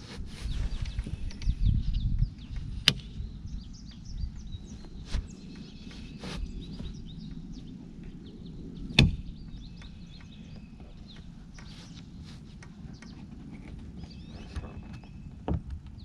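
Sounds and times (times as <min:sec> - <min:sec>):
hatch latch knock: 0:08.9 - 0:11.7.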